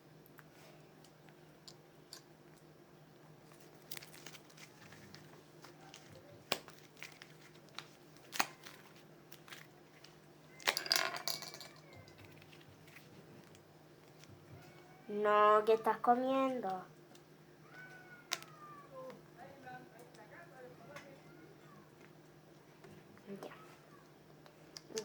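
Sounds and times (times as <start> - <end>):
faint steady hum: 0.0 - 25.0
small objects clicking and tapping: 0.3 - 2.7, 9.4 - 12.7, 24.4 - 25.0
crinkling rustle: 3.4 - 10.8, 11.8 - 14.9.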